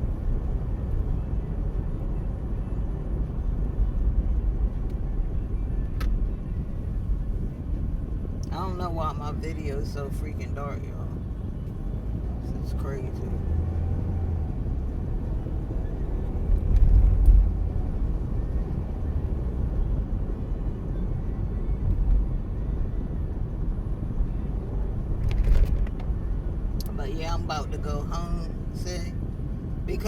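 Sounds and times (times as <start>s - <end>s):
car engine and road noise: 0.0s - 30.0s.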